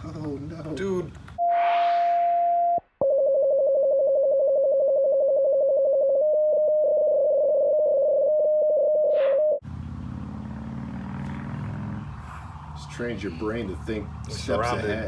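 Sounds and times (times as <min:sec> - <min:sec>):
loud buzzing electronic tone: 0:01.4 - 0:03.3.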